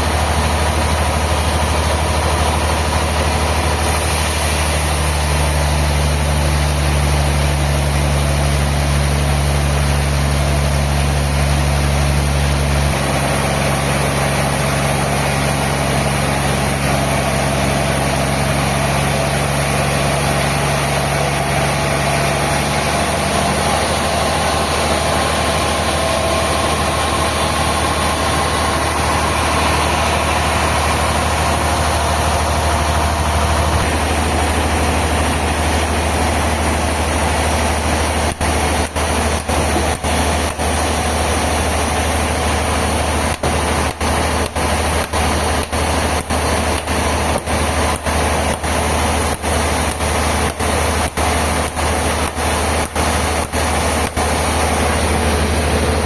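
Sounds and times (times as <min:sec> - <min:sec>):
sawmill machinery hum: 0:00.0 - 0:56.0.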